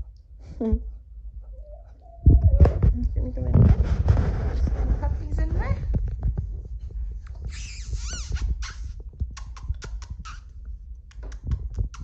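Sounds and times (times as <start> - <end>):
puppies squeaking: 7.4 - 10.6.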